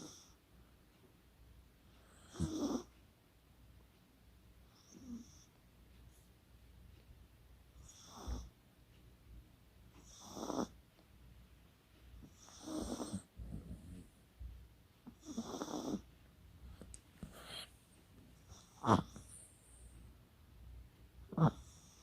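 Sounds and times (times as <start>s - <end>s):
dog snoring: 0.0s - 0.4s, 2.0s - 2.9s, 4.7s - 5.5s, 7.8s - 8.5s, 10.0s - 10.8s, 12.2s - 14.2s, 15.1s - 16.1s, 18.4s - 19.9s, 21.3s - 22.0s.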